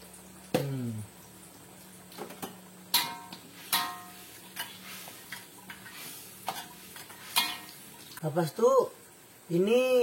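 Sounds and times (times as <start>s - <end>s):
metal spoon knocking on pot: 2.9s - 4.1s.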